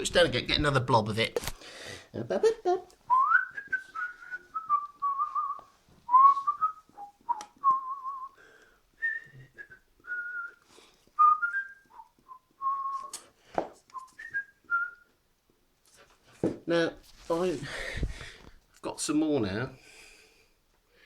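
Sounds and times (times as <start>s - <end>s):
man whistling a tune: 3.1s - 8.4s, 9.0s - 13.2s, 13.9s - 15.1s.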